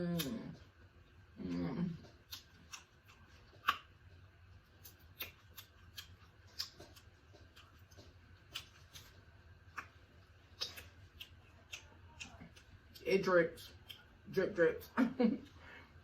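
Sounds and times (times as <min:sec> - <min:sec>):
chewing shellfish clicks and crackles: 0:02.1 - 0:04.0, 0:04.7 - 0:14.5.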